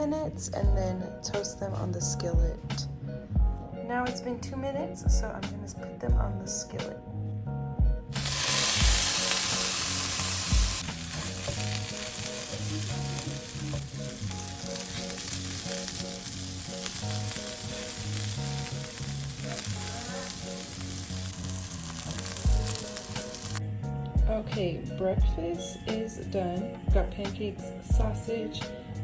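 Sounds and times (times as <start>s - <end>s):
background music: 0.0s - 29.0s
sausages sizzling in a skillet: 8.1s - 23.6s.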